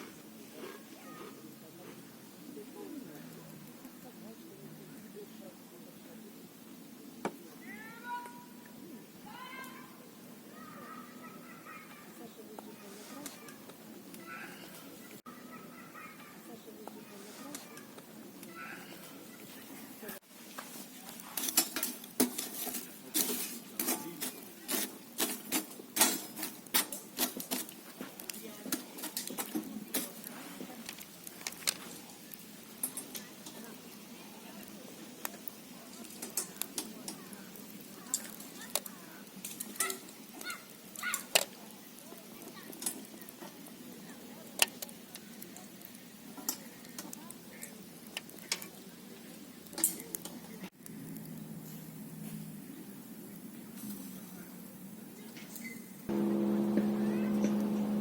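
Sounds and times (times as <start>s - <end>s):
faint steady background: 0.0s - 58.0s.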